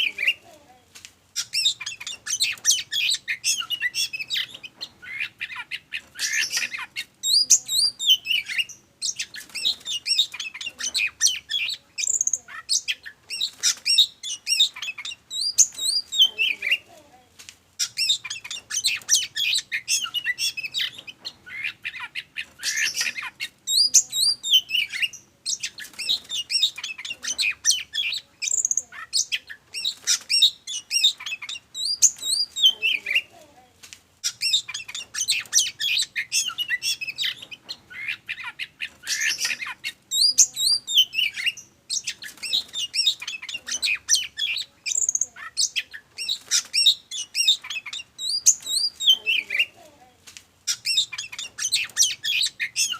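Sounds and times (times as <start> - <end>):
bird singing whistles and chirps: 6.2 - 16.6, 22.6 - 33.2, 34.3 - 49.7, 50.7 - 52.9.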